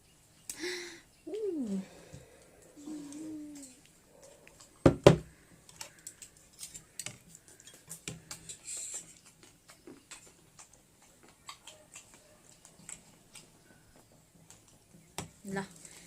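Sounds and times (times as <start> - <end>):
dishes knocking on table: 4.8 - 5.3.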